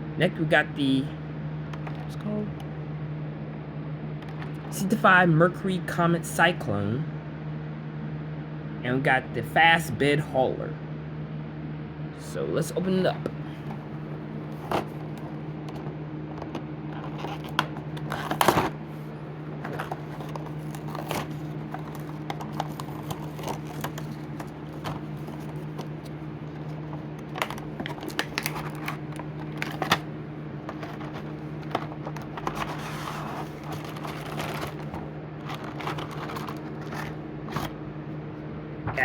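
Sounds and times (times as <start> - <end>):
steady low hum: 0.0 - 39.0
packaging being torn open: 27.2 - 30.0, 30.7 - 37.7.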